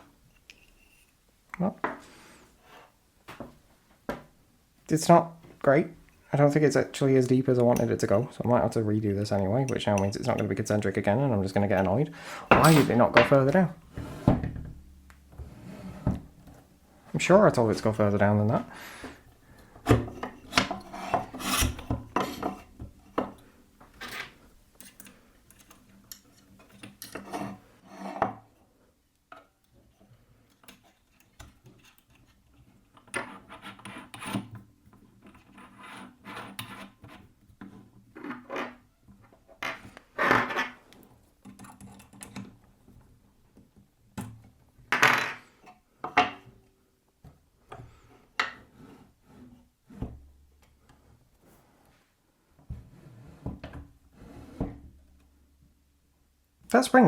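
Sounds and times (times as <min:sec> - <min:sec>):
wood scraping against wood: 0:19.8 - 0:22.7.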